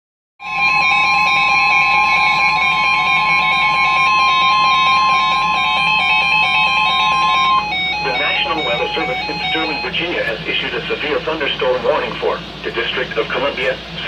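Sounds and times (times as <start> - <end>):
loud single-pitched alarm tone: 0.4 - 10.2.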